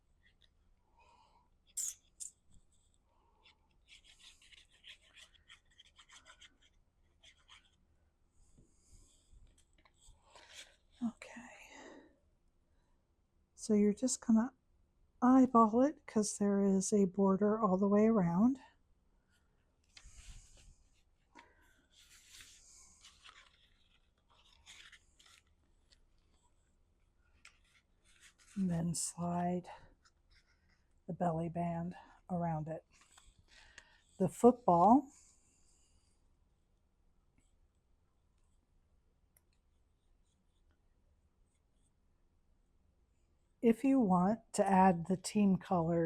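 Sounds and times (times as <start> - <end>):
cardstock rustling and scraping: 3.8 - 7.8, 21.9 - 26.5.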